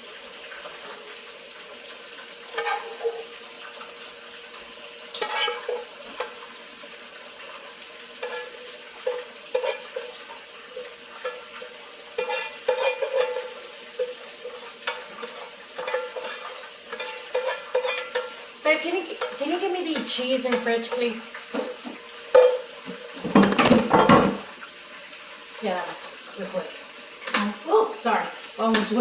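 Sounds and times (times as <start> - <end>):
meat sizzling in a frying pan: 0.0 - 29.0
utensil scraping and clinking on pan: 2.5 - 3.3, 5.1 - 6.4, 8.2 - 24.4.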